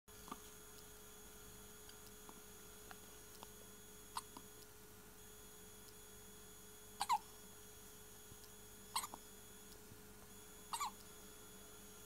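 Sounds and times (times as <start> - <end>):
low electrical hum: 0.1 - 12.0
faint hiccups: 4.2 - 4.4, 7.0 - 7.3, 8.9 - 9.2, 10.7 - 11.0.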